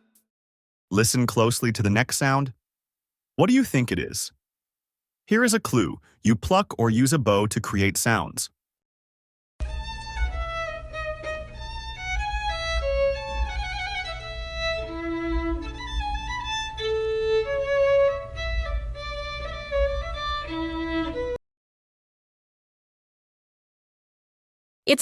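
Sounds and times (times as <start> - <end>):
bowed violin melody: 9.6 - 21.4.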